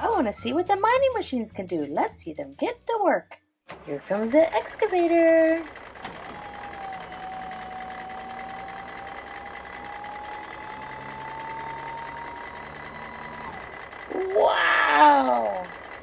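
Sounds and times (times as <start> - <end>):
heavy machinery engine drone: 3.7 - 16.0
rising engine whine: 3.8 - 16.0.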